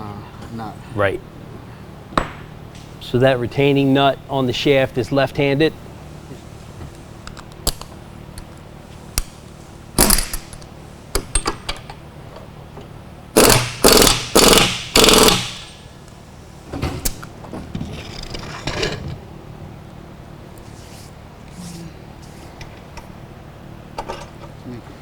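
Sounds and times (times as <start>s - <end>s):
impact wrench bursts: 10.0s - 10.6s, 13.4s - 15.9s.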